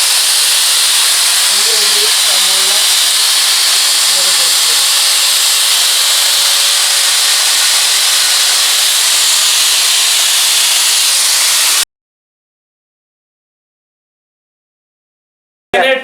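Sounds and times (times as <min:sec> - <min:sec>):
vacuum cleaner running: 0:00.0 - 0:11.8.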